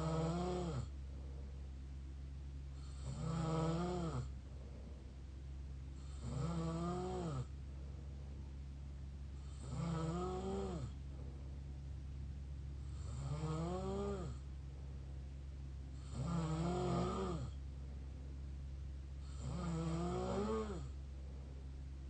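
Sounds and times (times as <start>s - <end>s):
mouth snoring: 0.0s - 0.9s, 2.8s - 4.3s, 6.0s - 7.5s, 9.4s - 11.0s, 12.9s - 14.4s, 16.0s - 17.6s, 19.2s - 21.0s.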